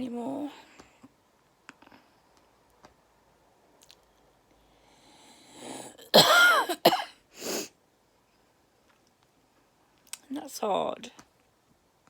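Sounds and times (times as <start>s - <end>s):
woman coughing: 6.1s - 7.2s
breath drawn in: 7.4s - 7.8s.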